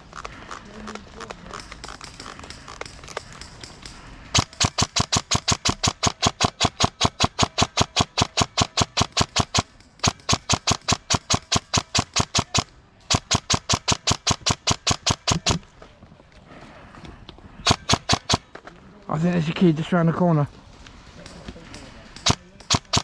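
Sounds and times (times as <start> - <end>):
airsoft gun bursts: 1.8 - 15.6, 17.6 - 18.6, 21.7 - 23.0.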